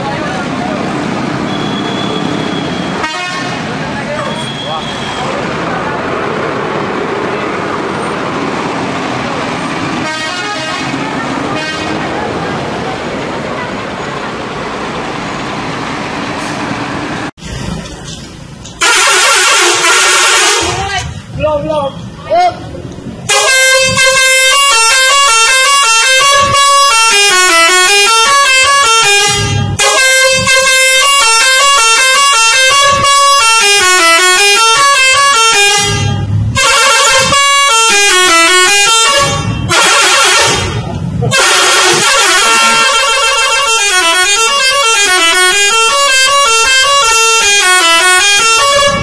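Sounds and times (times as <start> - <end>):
multi-tone musical air horn: 2.9 - 3.6, 10.0 - 12.0, 18.8 - 21.0, 23.3 - 49.0.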